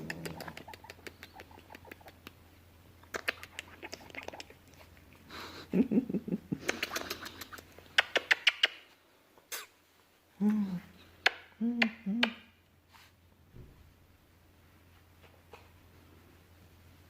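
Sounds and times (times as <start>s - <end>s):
puppy licking and mouthing: 0.0s - 2.4s, 3.0s - 5.3s, 6.6s - 8.8s.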